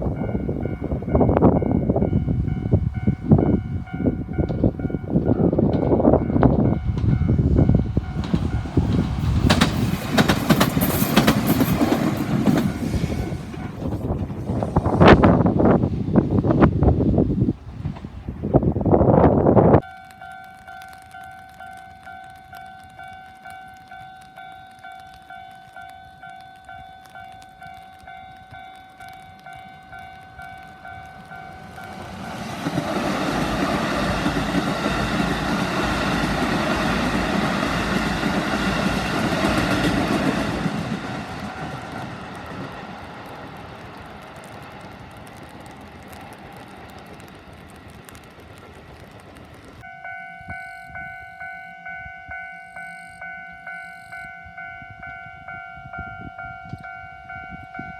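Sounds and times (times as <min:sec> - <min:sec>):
train rumbling past: 0:00.0 - 0:57.9
level-crossing bell ringing: 0:49.8 - 0:57.9.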